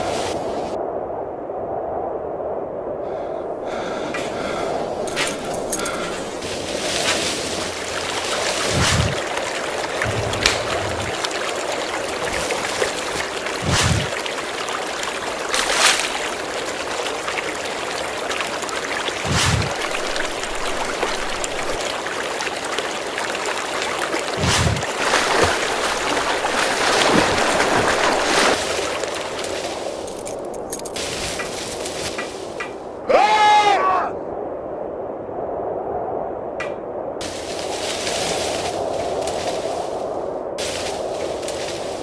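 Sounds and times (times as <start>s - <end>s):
running water rushing: 3.8s - 33.0s.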